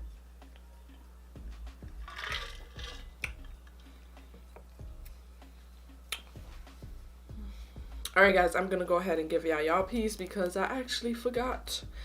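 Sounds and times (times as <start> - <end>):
wet mouth clicks and smacks: 3.2 - 3.5, 6.1 - 6.3.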